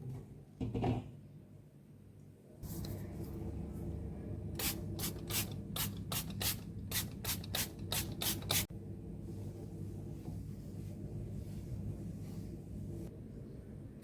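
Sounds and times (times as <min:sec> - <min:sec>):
spray bottle squirting: 0:04.6 - 0:08.7.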